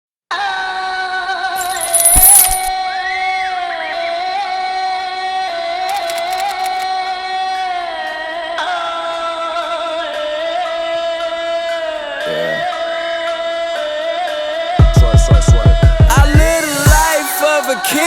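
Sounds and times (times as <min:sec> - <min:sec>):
coin-like jingling burst: 0:01.6 - 0:02.8.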